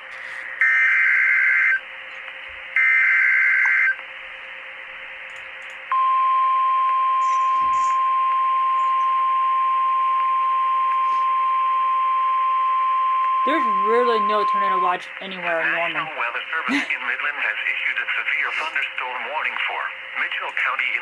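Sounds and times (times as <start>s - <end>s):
steady warning alarm tone: 0.6s - 1.8s, 2.8s - 4.0s, 5.9s - 16.1s.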